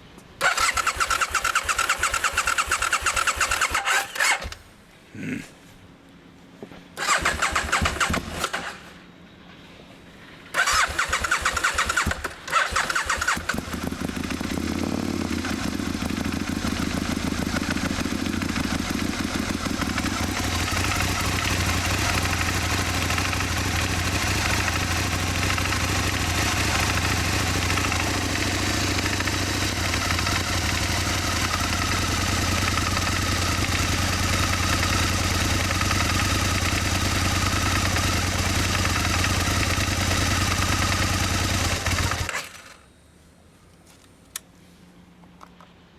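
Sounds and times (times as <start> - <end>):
electric starter cranking engine: 0.4 - 4.6, 7.0 - 9.0, 10.5 - 42.8
motorcycle engine idling: 13.0 - 42.3.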